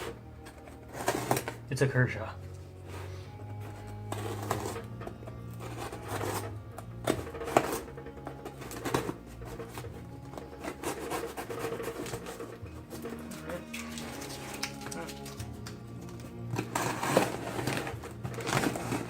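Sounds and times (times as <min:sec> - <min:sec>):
knife cutting tape and cardboard: 0:08.5 - 0:19.0.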